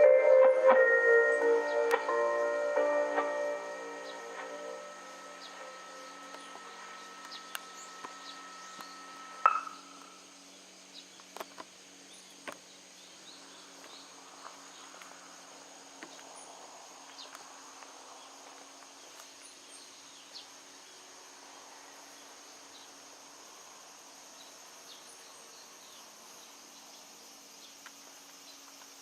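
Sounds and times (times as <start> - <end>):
loudspeaker chime: 0.0 - 8.6
high insect drone: 0.0 - 29.0.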